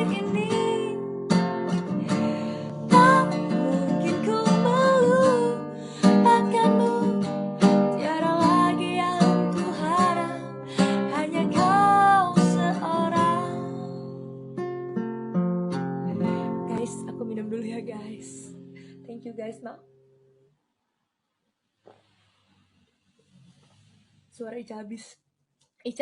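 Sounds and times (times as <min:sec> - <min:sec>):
woman singing a slow ballad: 0:00.0 - 0:01.1, 0:02.1 - 0:07.3, 0:07.9 - 0:14.1
acoustic guitar strummed chords: 0:00.0 - 0:20.4.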